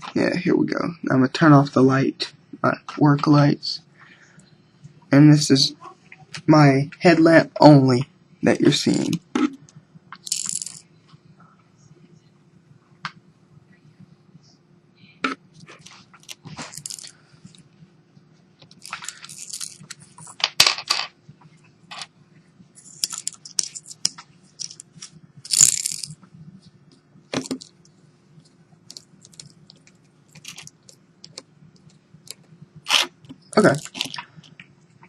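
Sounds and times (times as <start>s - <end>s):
phone parts clicking and scraping: 10.2s - 10.8s, 15.8s - 17.2s, 18.7s - 21.1s, 22.8s - 26.2s, 28.9s - 31.4s.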